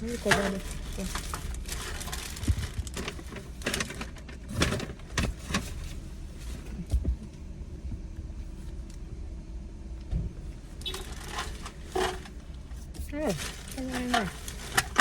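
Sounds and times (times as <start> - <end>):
packaging rustling and clicking: 0.0 - 6.0, 10.8 - 15.0.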